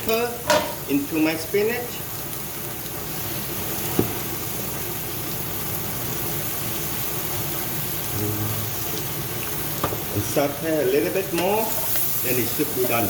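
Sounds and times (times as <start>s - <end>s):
spinach sizzling in a pan: 0.0s - 13.0s.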